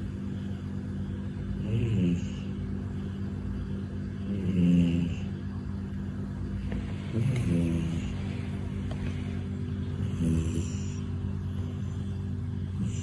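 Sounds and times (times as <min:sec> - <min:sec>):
steady low hum: 0:00.0 - 0:13.0
pet snoring: 0:06.6 - 0:11.1.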